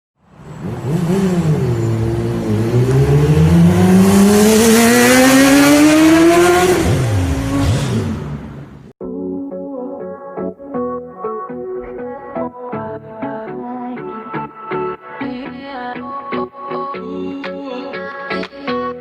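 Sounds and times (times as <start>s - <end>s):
engine accelerating hard: 0.2s - 8.9s.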